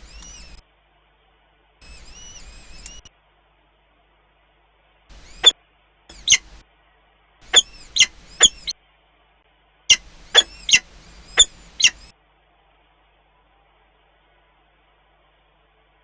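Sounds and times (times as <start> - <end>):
raptor calling: 0.0 - 0.6, 1.8 - 3.1, 5.1 - 5.5, 6.1 - 6.6, 7.4 - 8.7, 9.9 - 12.1.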